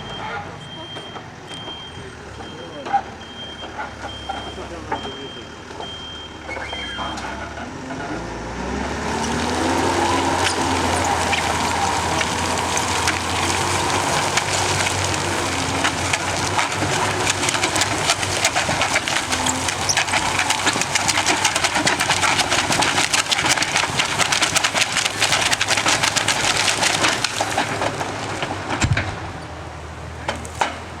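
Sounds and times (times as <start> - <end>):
tractor engine and hydraulics: 0.0 - 31.0
branches snapping: 9.1 - 29.2.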